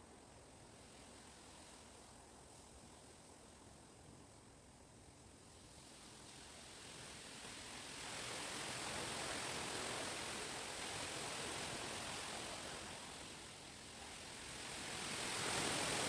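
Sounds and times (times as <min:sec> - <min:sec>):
wind rustling leaves and branches: 0:07.8 - 0:16.0.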